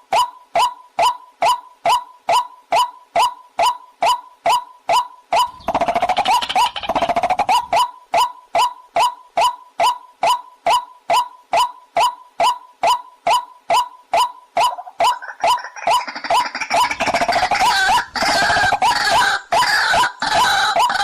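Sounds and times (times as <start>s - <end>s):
waterhen calling: 14.2s - 21.0s.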